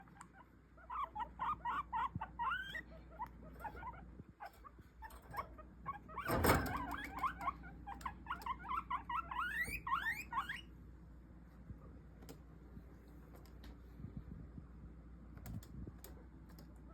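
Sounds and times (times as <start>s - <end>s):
guinea pigs squeaking: 0.0s - 10.7s.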